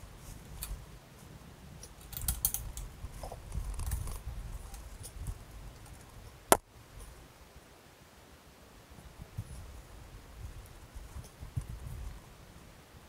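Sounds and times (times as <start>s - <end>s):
small parts clicking and rattling: 1.8s - 2.9s.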